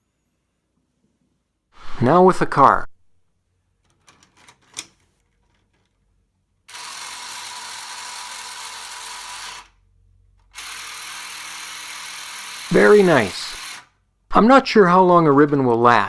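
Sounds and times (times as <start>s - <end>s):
toy elevator motor whirring: 6.7s - 9.8s, 10.5s - 13.9s.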